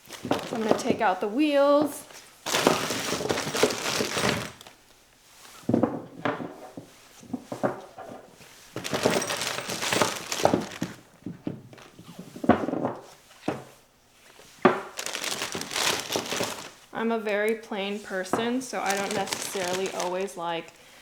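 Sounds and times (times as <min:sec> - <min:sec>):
bag rustling: 0:00.0 - 0:04.8, 0:08.4 - 0:12.3, 0:14.2 - 0:16.9, 0:18.1 - 0:20.7
hard parts thunking and clacking: 0:02.5 - 0:04.7, 0:05.7 - 0:11.6.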